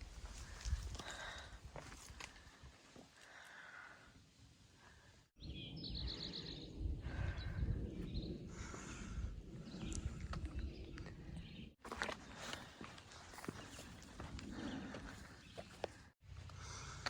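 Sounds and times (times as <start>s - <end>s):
rumbling outdoor noise: 5.4s - 17.0s.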